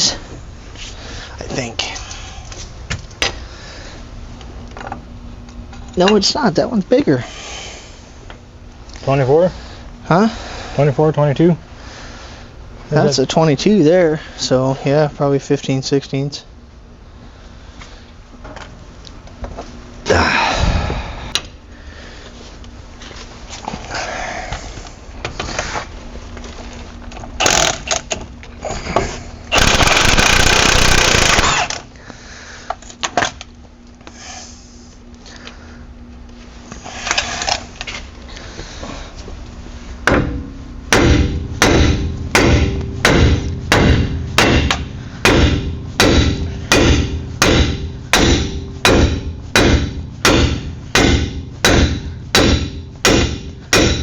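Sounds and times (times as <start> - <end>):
loud burst of noise: 29.5 - 31.8
hammer striking steel: 40.1 - 54.0.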